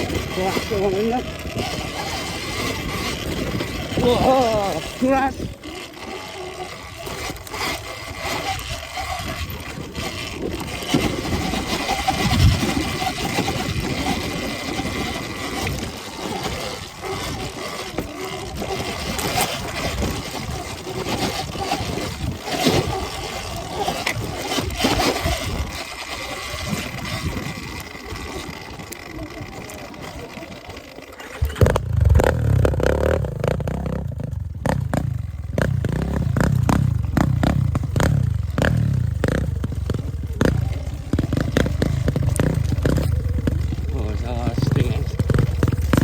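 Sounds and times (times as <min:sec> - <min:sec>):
electric dirt bike whine: 0:00.0 - 0:46.0
knocks and rattles: 0:31.2 - 0:46.0.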